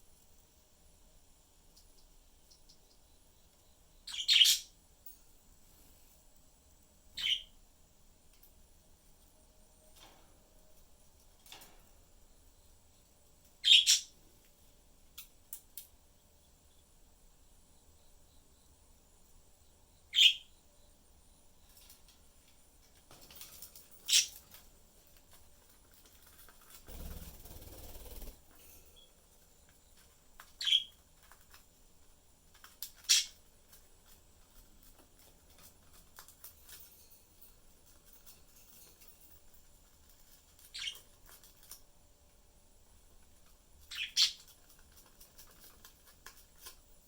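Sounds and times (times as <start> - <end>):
budgerigars chirping: 4.1 - 4.7, 7.2 - 7.5, 13.6 - 14.1, 43.9 - 44.4.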